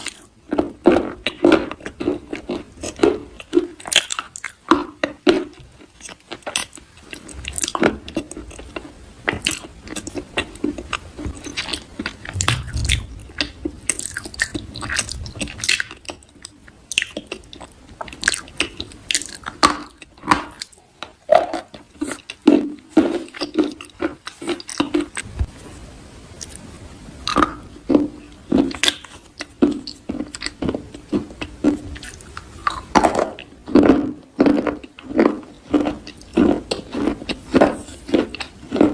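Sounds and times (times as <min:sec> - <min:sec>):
soft crunching: 0:27.3 - 0:38.9.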